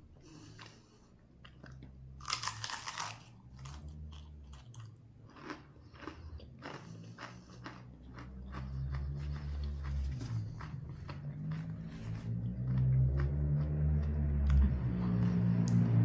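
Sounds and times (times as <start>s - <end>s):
chewing crunches: 0.2s - 16.0s
crunchy bite: 2.2s - 9.5s.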